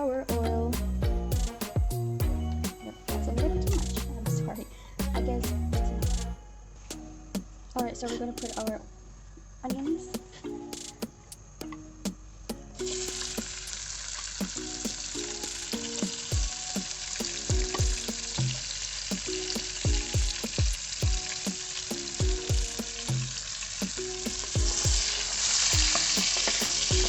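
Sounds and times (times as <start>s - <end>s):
onion sizzling in hot oil: 22.8s - 26.9s.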